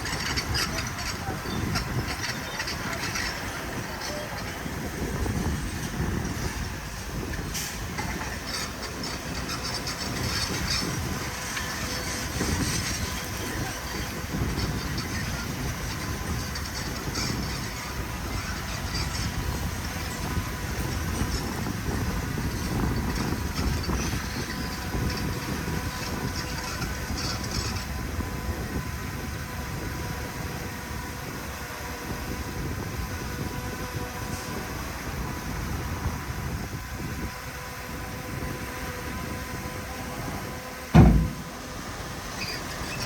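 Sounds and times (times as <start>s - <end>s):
diesel machinery rumbling: 0.0s - 43.0s
loud thud: 41.0s - 41.8s.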